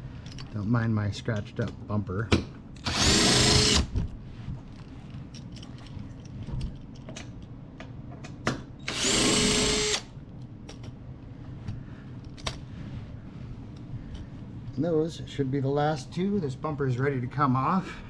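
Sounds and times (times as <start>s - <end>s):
clicks of tool and bolt handling: 0.2s - 0.6s, 4.7s - 8.6s, 10.4s - 11.0s
power drill spinning: 2.8s - 3.9s, 8.8s - 10.1s.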